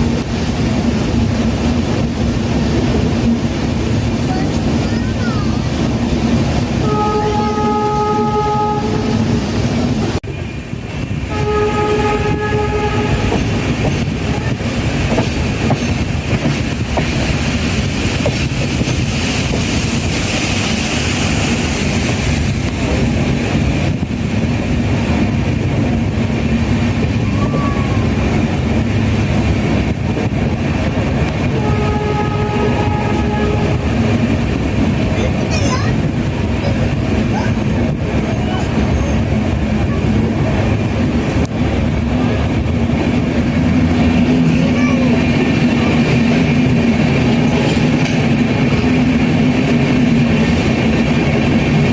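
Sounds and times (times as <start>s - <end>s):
train rumbling on track: 0.0s - 51.9s
train horn blasts: 6.8s - 9.6s, 11.2s - 13.6s, 31.4s - 34.0s.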